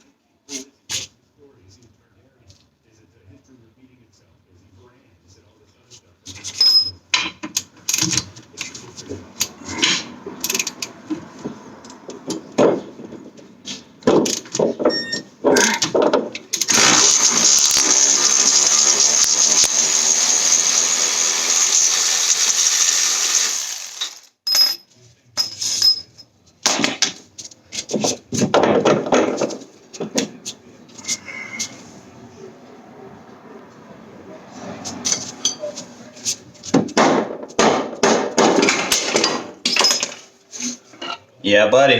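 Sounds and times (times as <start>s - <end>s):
metal clanks and knocks: 9.4s - 16.7s, 26.6s - 30.4s, 36.7s - 40.3s
loud power tool running: 16.7s - 24.3s
tools and parts clattering: 23.8s - 30.3s, 35.0s - 35.9s, 36.6s - 41.2s.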